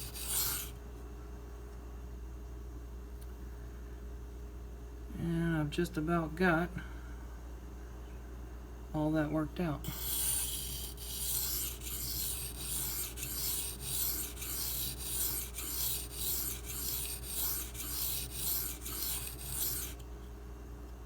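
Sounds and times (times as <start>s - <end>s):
knife scraping on whetstone: 0.0s - 0.7s, 9.8s - 20.1s.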